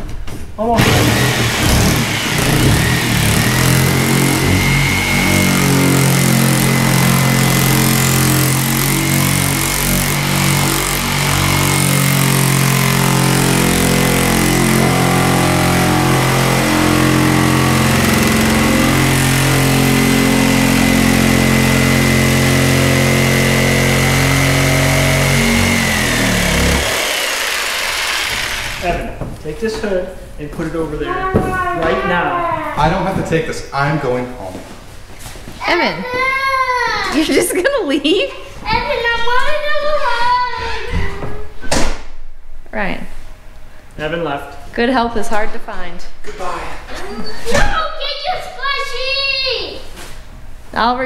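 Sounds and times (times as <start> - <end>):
electric saw cutting: 0.8 - 29.0.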